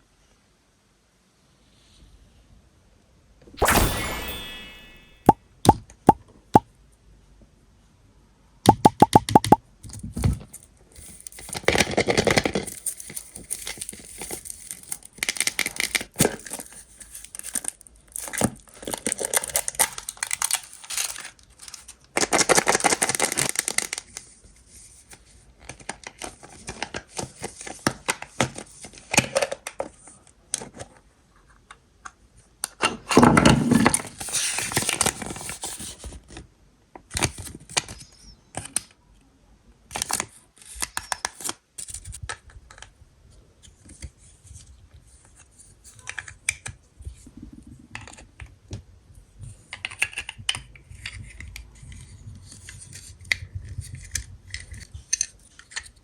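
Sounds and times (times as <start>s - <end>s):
sharp clicks: 8.7s - 9.6s.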